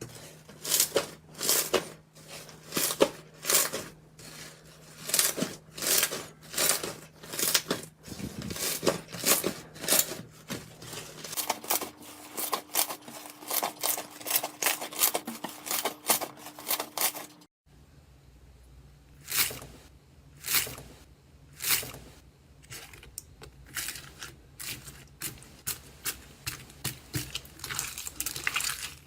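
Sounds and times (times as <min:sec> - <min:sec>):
slime squelching by hand: 0:22.7 - 0:29.0.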